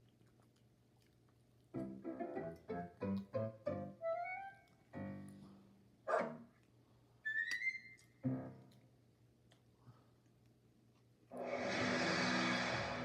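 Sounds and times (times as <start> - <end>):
light cartoon music: 1.8 - 5.4.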